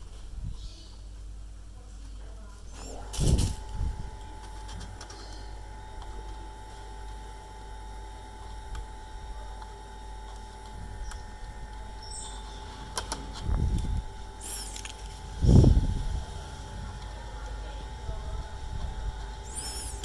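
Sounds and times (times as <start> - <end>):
faint steady hum: 0.0 - 20.0
dull low thumps: 15.3 - 16.3.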